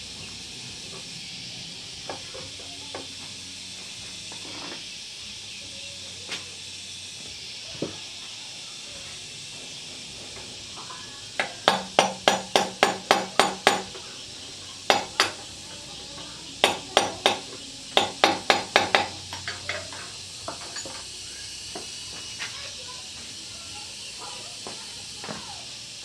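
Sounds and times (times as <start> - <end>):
steady hiss: 0.0 - 26.0
sharp metallic knocks: 11.4 - 14.0, 14.9 - 15.4, 16.6 - 19.8.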